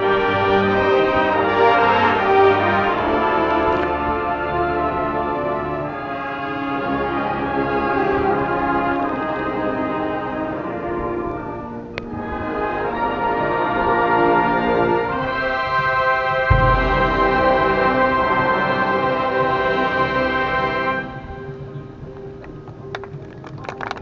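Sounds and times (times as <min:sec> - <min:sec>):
marching band brass chords: 0:00.0 - 0:08.0, 0:14.7 - 0:21.4
deep low hit: 0:16.5 - 0:20.0.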